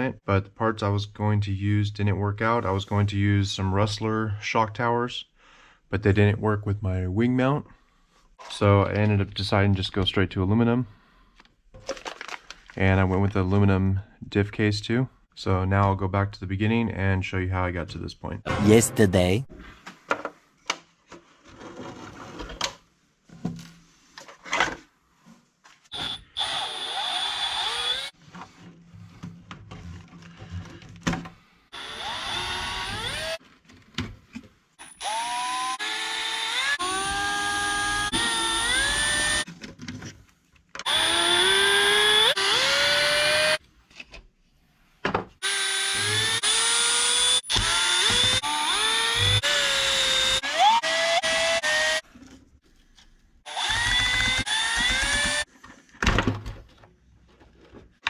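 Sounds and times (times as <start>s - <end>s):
electric screwdriver motor whirring: 26.0s - 28.1s, 31.8s - 33.4s, 34.8s - 39.4s, 40.9s - 43.6s, 45.4s - 52.0s, 53.5s - 55.4s.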